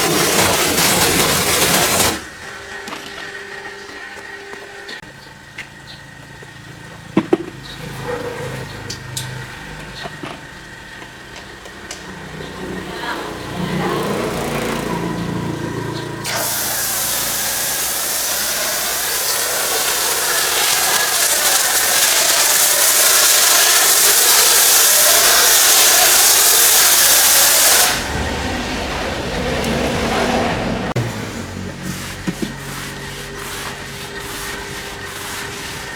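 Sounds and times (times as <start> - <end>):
pressure washer jet hissing: 0.0 - 2.4, 16.2 - 35.9
low mechanical rumble: 27.9 - 35.9.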